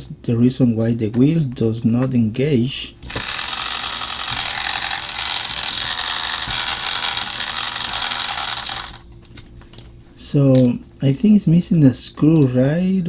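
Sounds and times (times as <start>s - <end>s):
toy motor grinding whir: 3.0s - 9.0s.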